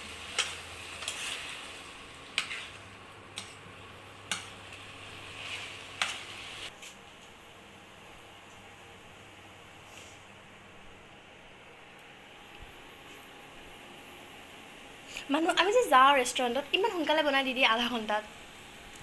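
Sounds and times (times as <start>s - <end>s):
chicken sizzling in a pan: 0.0s - 7.0s, 15.0s - 19.0s.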